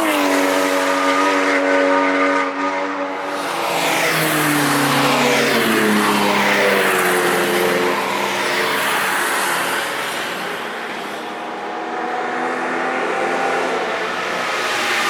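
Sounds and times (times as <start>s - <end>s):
race car passing: 0.0s - 15.0s.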